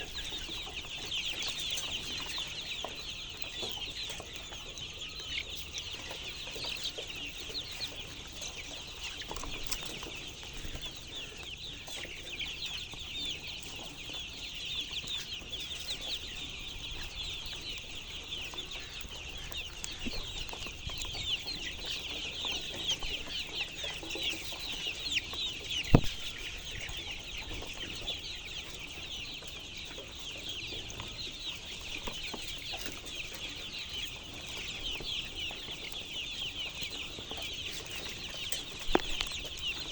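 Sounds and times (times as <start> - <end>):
flock of chickens calling: 0.0 - 39.9
sharp knock: 25.9 - 26.2.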